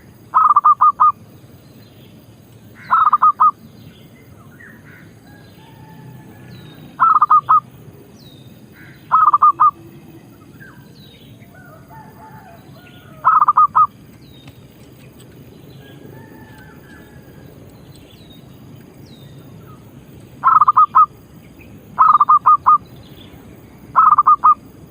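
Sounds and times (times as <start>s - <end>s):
small birds chirping: 0.0s - 5.7s, 6.3s - 16.0s, 16.6s - 24.6s
dove cooing: 0.4s - 1.2s, 2.8s - 3.6s, 5.7s - 7.7s, 8.8s - 10.2s, 11.5s - 13.9s, 20.4s - 21.1s, 22.0s - 22.8s, 24.0s - 24.6s.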